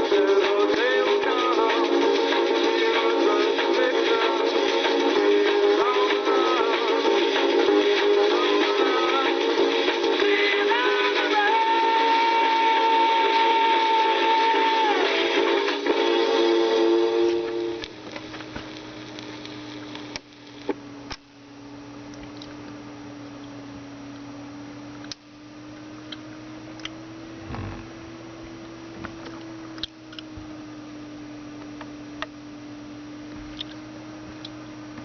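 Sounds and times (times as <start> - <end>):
music from a record: 0.0 - 20.8, 26.1 - 30.4
vinyl surface hiss: 0.0 - 35.0
vinyl clicks and pops: 17.3 - 21.3, 22.0 - 22.7, 25.0 - 30.5, 31.6 - 32.4, 33.3 - 35.0
steady wavering hum: 18.8 - 35.0.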